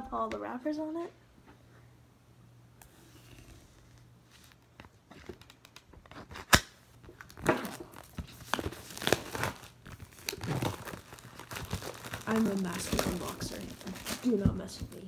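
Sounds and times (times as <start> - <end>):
wrapper crinkling and tearing: 4.5 - 15.0
wrapper cut with knife: 5.3 - 14.4.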